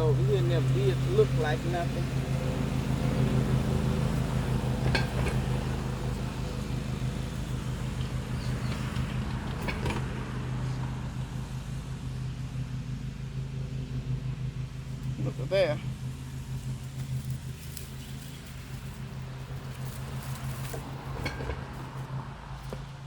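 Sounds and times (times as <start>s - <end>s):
lawn mower engine running: 0.0s - 23.0s
hand digging in soil: 16.6s - 22.0s.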